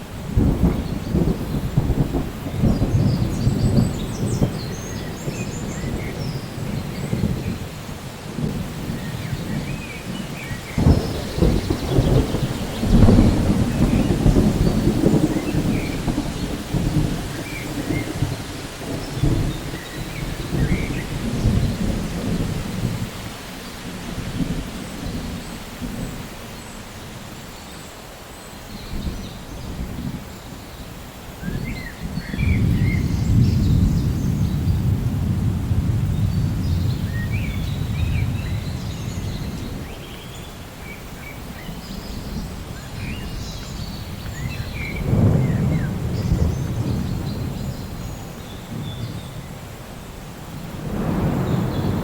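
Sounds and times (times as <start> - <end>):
thunder rumbling: 0.0 - 27.4, 28.9 - 52.0
steady rain: 0.0 - 52.0
sharp thunder crack: 8.4 - 23.2, 44.1 - 49.3, 50.6 - 52.0.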